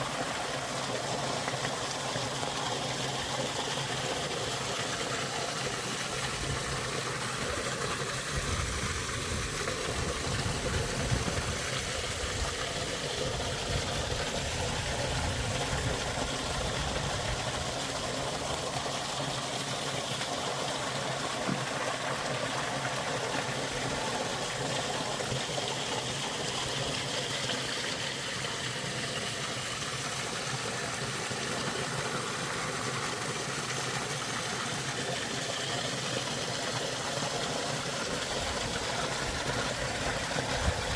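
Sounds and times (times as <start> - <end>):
river water rushing and gurgling: 36.2 - 40.9.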